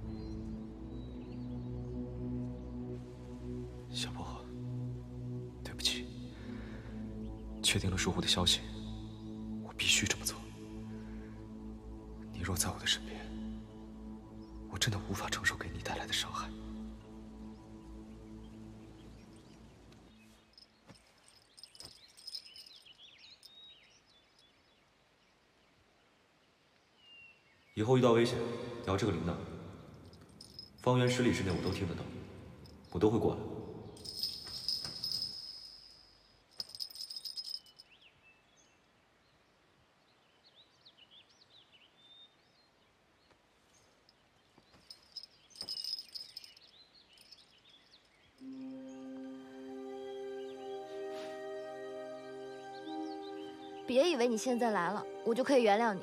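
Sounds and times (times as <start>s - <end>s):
held music chord: 0.0s - 20.2s, 48.4s - 56.0s
birds chirping: 0.0s - 56.0s
insects: 6.5s - 25.6s, 29.7s - 38.4s, 43.3s - 51.0s
hand bell jingling: 20.5s - 23.6s, 29.9s - 30.9s, 34.0s - 38.0s, 44.7s - 48.6s.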